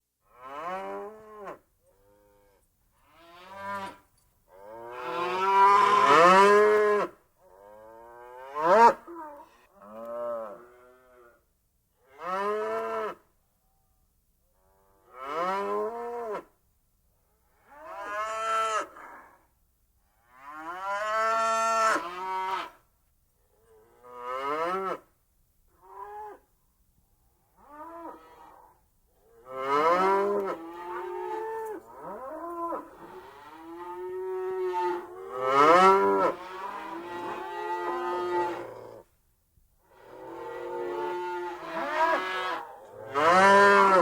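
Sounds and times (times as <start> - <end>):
cattle mooing: 29.5 - 39.0, 40.0 - 44.0.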